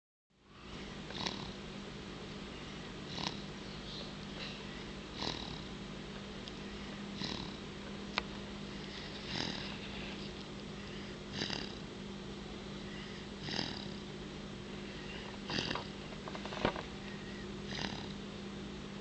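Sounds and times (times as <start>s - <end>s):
steady low hum: 0.3s - 19.0s
baby snoring softly: 0.5s - 1.6s, 2.5s - 3.5s, 4.4s - 5.7s, 6.6s - 7.6s, 8.7s - 11.9s, 12.8s - 14.1s, 14.9s - 18.2s.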